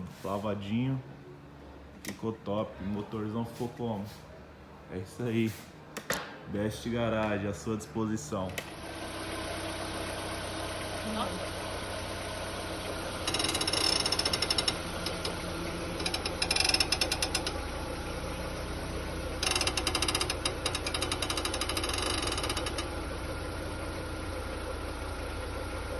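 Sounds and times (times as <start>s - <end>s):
car engine idling: 8.1s - 25.9s
rattling clicking from car front: 13.0s - 17.7s, 19.4s - 23.0s.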